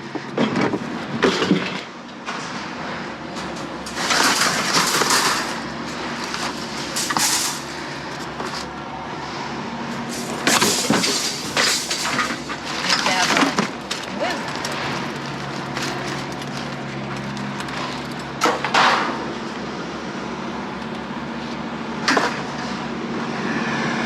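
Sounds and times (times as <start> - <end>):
scrap metal scraping and clattering: 1.2 - 19.3
steady rumble: 3.1 - 22.1.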